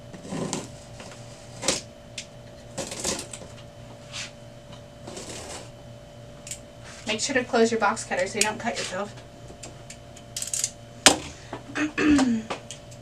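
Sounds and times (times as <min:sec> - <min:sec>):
faint steady hum: 0:00.0 - 0:13.0
box cutter slicing cardboard: 0:00.2 - 0:01.8, 0:02.8 - 0:03.4, 0:05.0 - 0:05.7.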